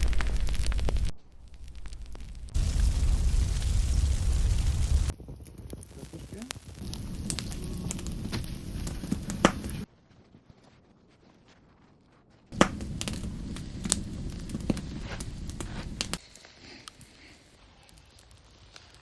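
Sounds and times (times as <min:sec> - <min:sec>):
low rumble: 0:00.0 - 0:09.9, 0:12.6 - 0:16.2
campfire crackling and popping: 0:00.0 - 0:19.0.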